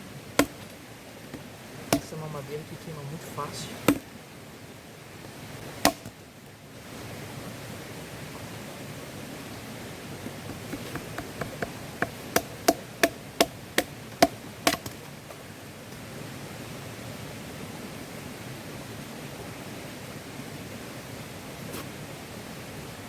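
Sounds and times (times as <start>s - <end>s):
knife batoned through wood: 10.3s - 13.5s.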